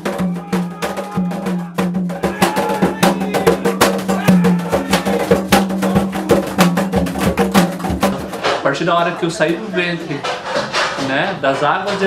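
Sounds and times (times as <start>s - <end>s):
hand drums in quick rhythm: 0.0s - 12.0s
held pitched backing: 0.0s - 12.0s
sharp clacking strokes: 4.9s - 12.0s.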